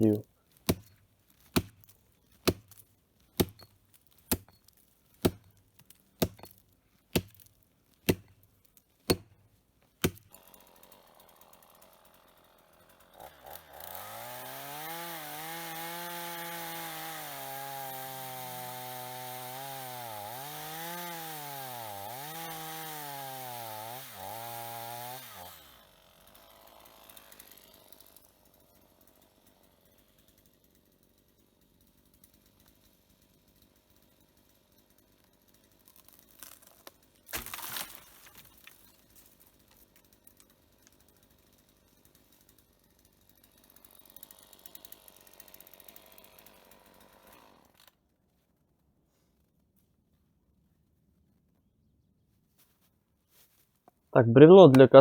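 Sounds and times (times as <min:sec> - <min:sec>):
chainsaw cutting wood: 0:00.0 - 0:48.1
axe chopping wood: 0:00.6 - 0:10.5, 0:36.0 - 0:38.9.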